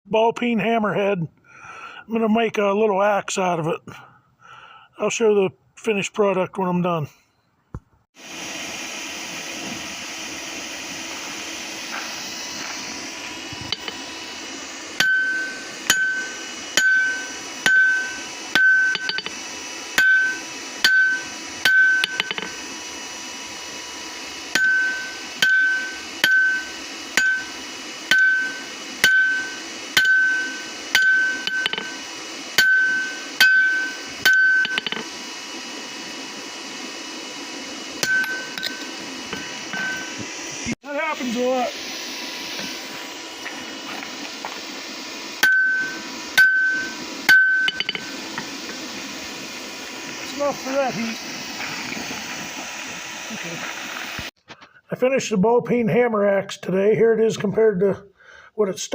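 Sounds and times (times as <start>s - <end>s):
hammer striking steel on anvil: 13.7s - 14.0s, 15.0s - 19.3s, 20.0s - 22.5s, 24.5s - 32.0s, 32.6s - 35.0s, 38.0s - 40.1s, 45.4s - 48.1s
steady hiss: 38.4s - 54.3s.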